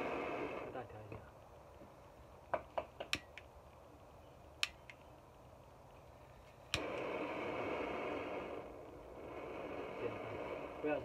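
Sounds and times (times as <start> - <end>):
torch gas hiss: 0.0 - 0.9, 6.7 - 11.0.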